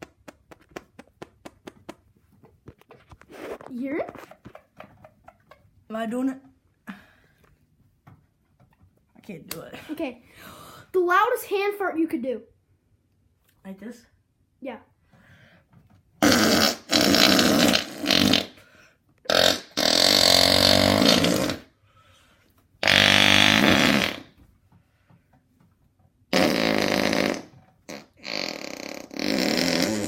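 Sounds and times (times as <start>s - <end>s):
hand fart noises: 0.0s - 5.6s, 16.2s - 21.8s, 22.8s - 24.5s, 26.3s - 30.0s.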